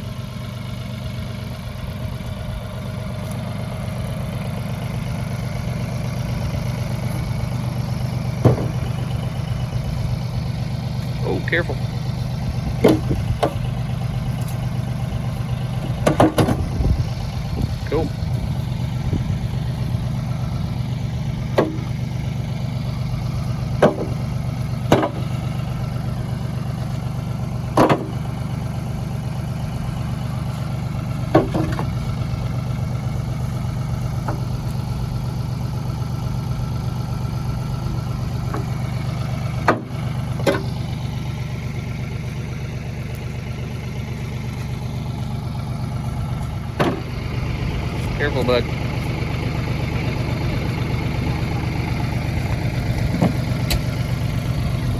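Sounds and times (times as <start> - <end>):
engine idling: 0.0 - 54.9
rocks knocking into bucket: 8.4 - 8.9.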